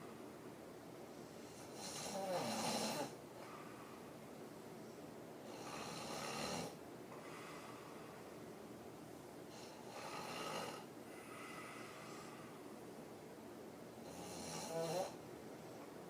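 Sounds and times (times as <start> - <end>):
woman snoring: 1.6 - 3.2, 5.4 - 6.8, 9.5 - 11.8, 14.0 - 15.2
quiet breath: 3.4 - 6.2, 7.1 - 8.6, 9.5 - 13.0.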